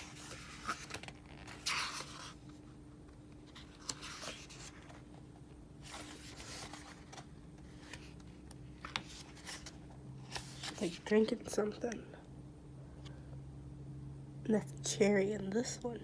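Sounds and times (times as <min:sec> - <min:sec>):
paper pages swishing: 0:05.8 - 0:08.2, 0:08.8 - 0:11.3.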